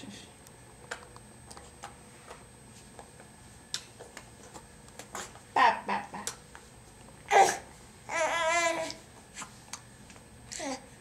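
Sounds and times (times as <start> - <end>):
baby vocal sound: 7.3 - 9.0, 10.5 - 11.0.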